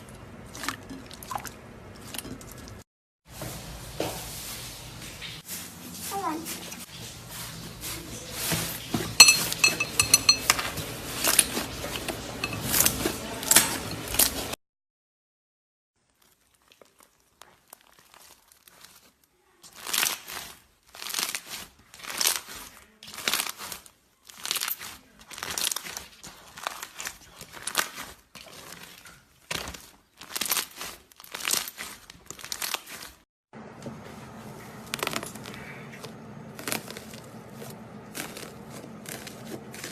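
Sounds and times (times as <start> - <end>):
slime crackling: 16.0 - 33.2, 36.5 - 39.9.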